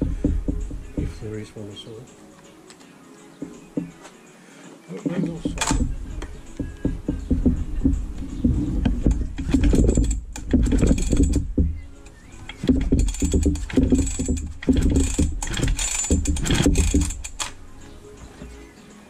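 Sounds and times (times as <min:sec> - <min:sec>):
chainsaw pull-cord cranking: 0:09.1 - 0:11.6, 0:12.5 - 0:17.6.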